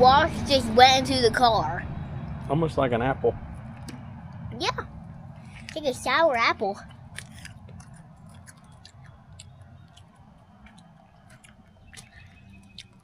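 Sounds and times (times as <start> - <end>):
low steady hum: 0.0 - 13.0
person chewing crunchy fruit: 6.8 - 13.0.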